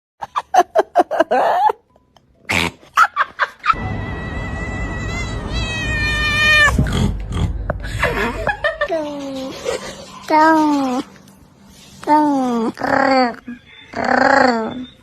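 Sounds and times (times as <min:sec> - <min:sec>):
cat yowling: 0:03.8 - 0:06.8.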